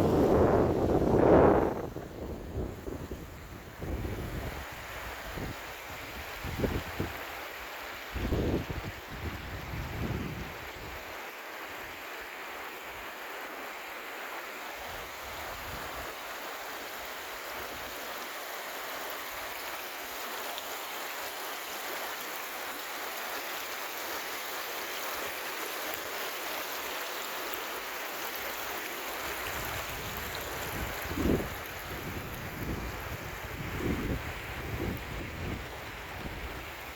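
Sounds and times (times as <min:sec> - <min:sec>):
wind rumble on microphone: 0:00.0 - 0:07.2, 0:08.1 - 0:11.0, 0:29.4 - 0:36.9
stream of water flowing: 0:00.0 - 0:36.9.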